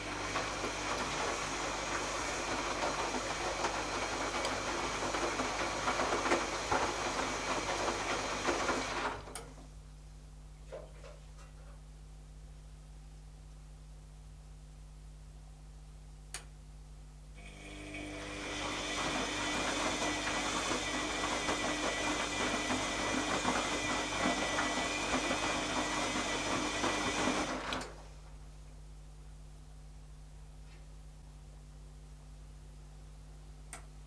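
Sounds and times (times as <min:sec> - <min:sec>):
washing machine whirring: 0:00.0 - 0:09.8, 0:17.4 - 0:28.4.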